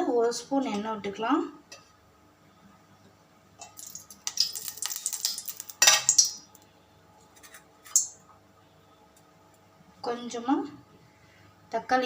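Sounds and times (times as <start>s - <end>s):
metal spoon scraping a pan: 7.3s - 8.1s.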